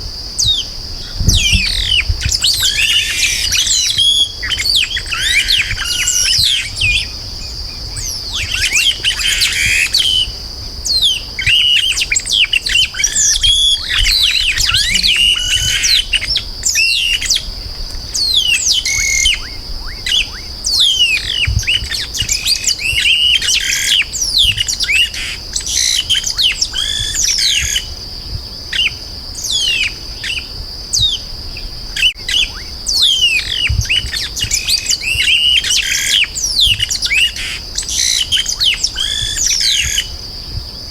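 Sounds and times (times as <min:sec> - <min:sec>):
blackbird singing rapid chirps: 0:00.4 - 0:17.4
high-pitched hiss-like drone: 0:11.7 - 0:19.8.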